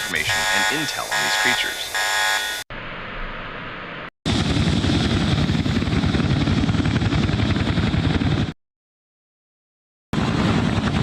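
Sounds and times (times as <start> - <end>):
electronic alert tone: 0.0 - 2.6
helicopter rotor beat: 0.0 - 2.7, 4.3 - 8.6, 10.2 - 11.0.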